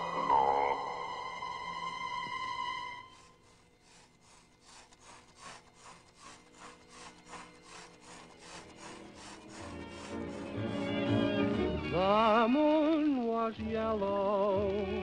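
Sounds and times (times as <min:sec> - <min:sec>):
steady electronic tone: 0:00.0 - 0:03.2
rhythmic rasping scrape: 0:00.0 - 0:11.6.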